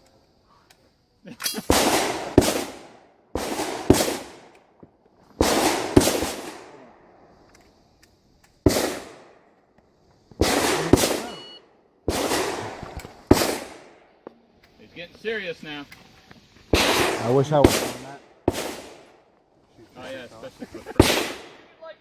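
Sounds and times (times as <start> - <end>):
rifle shots with echo: 1.7 - 4.5, 5.4 - 6.9, 8.7 - 9.4, 10.4 - 11.5, 12.1 - 14.1, 16.7 - 19.2, 21.0 - 21.6.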